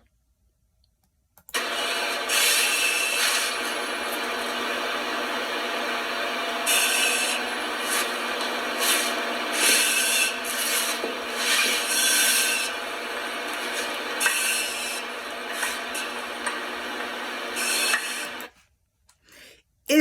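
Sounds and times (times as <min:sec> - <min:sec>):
breathing through air pack regulator: 0:19.2 - 0:19.6.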